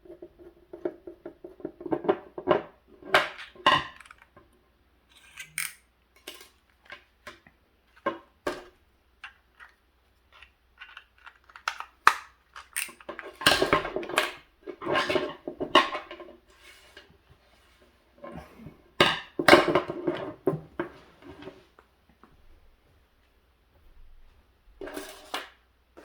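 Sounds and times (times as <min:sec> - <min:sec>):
clicks and clatter of tools: 0:03.6 - 0:04.4, 0:05.1 - 0:08.2, 0:09.2 - 0:16.3.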